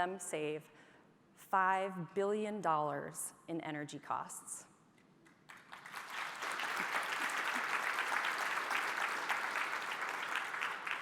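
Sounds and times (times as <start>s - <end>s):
audience applauding: 5.5s - 11.0s.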